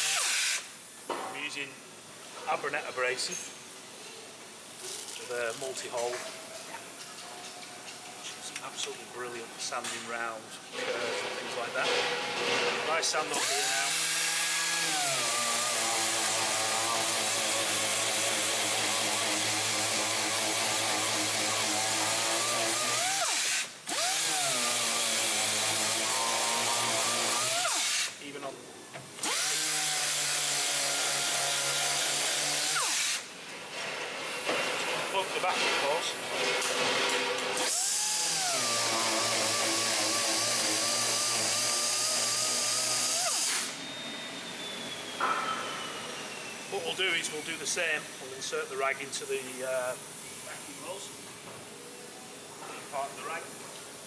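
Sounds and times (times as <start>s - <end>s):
dust extraction hiss: 8.2s - 54.0s
hand-held sander on wood: 13.3s - 28.2s, 29.2s - 33.2s, 35.1s - 43.8s.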